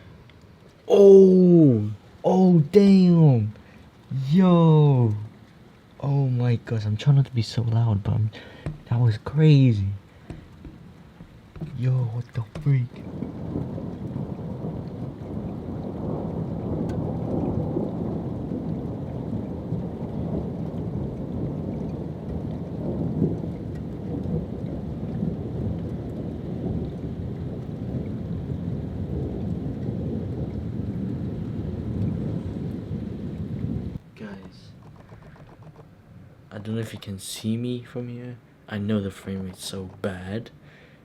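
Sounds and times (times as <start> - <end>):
rain falling: 0.0 - 41.0
rolling thunder: 8.5 - 34.0.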